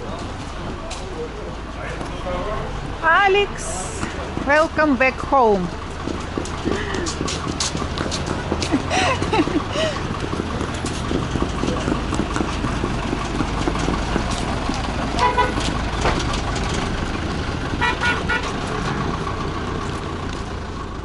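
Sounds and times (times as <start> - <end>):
traffic rumble: 0.0 - 21.0
car horn toots: 15.2 - 15.7, 17.8 - 18.6.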